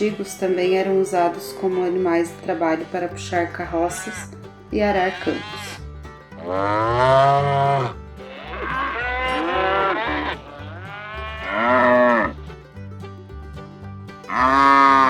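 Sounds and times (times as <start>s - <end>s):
music with low pulsing beat: 3.4s - 15.0s
cattle mooing: 4.9s - 5.8s, 6.4s - 12.4s, 14.3s - 15.0s.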